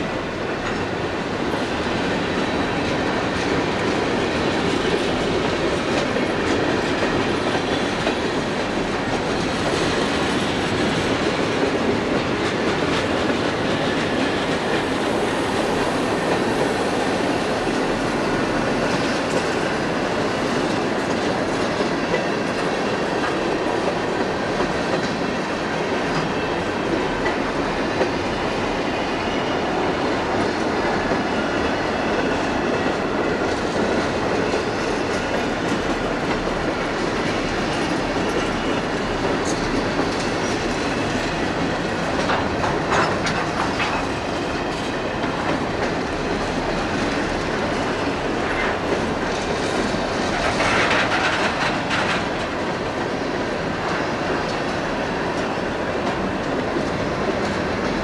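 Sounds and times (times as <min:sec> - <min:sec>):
freight train cars rolling: 0:00.0 - 0:58.0
wheels clacking over rail joints: 0:29.7 - 0:58.0.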